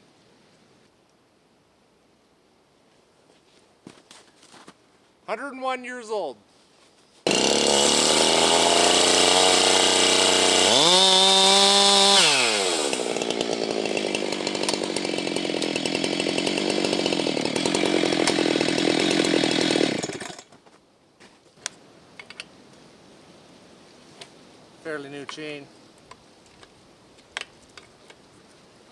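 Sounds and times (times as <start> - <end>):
chainsaw cutting wood: 7.3 - 20.6.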